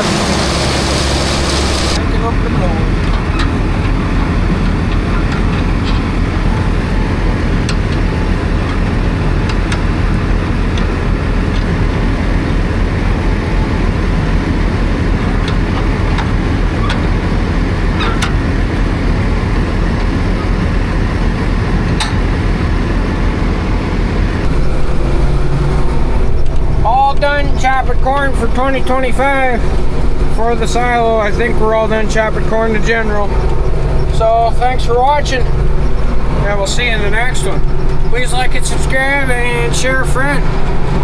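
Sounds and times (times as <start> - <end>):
tractor engine running: 0.0 - 41.0
sharp clicks and rattles: 24.4 - 41.0.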